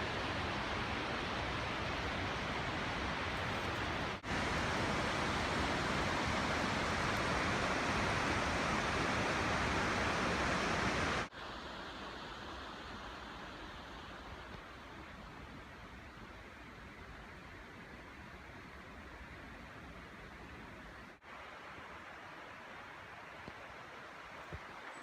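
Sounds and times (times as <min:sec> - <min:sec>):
creek water rushing: 0:00.0 - 0:14.5.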